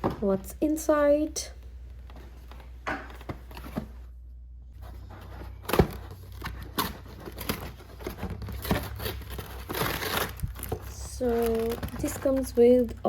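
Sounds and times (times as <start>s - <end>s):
packaging being torn open: 5.6s - 12.5s.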